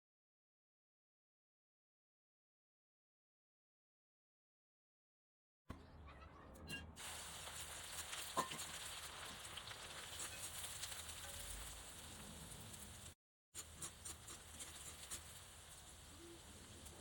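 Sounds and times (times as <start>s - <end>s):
food sizzling in hot oil: 7.0s - 17.0s.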